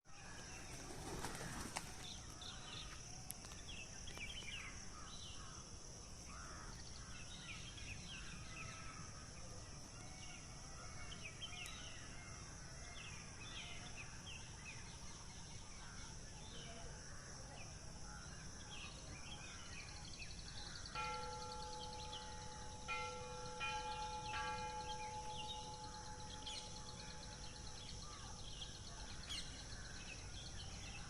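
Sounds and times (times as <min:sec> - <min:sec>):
steady high-pitched hiss: 0:00.1 - 0:31.0
small birds chirping: 0:00.2 - 0:05.6, 0:17.6 - 0:31.0.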